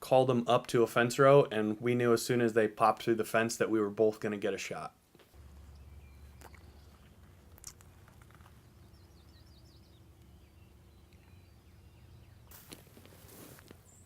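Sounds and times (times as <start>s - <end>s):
bird trilling high chirps: 5.6s - 7.5s, 8.4s - 14.0s
brief rustle: 12.5s - 14.0s.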